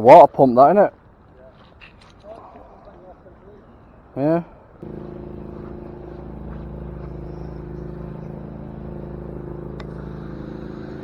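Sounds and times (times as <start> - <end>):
engine humming steadily: 4.8 - 11.0.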